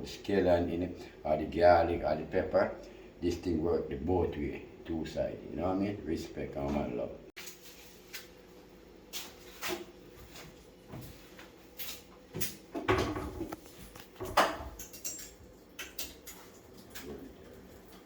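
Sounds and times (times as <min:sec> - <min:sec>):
hard objects knocking and clattering: 0:12.8 - 0:13.6.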